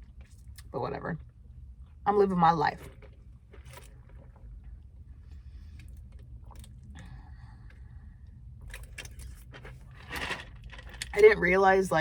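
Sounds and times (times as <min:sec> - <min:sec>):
steady low rumble: 0:00.0 - 0:12.0
chewing food: 0:02.9 - 0:07.9.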